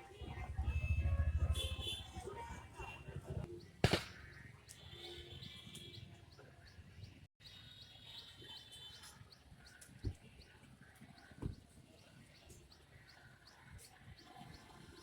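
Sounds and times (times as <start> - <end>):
small birds chirping: 3.6 - 15.0
sharp knock: 3.8 - 4.2.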